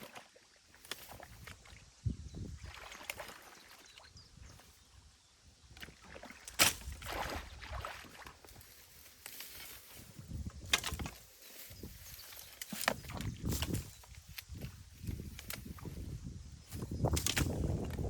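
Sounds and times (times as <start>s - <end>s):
stream water splashing: 0.0s - 4.8s, 5.7s - 9.5s.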